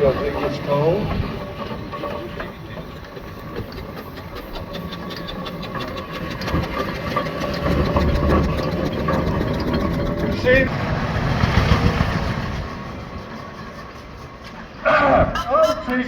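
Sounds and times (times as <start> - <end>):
steam engine clattering: 0.0 - 16.0.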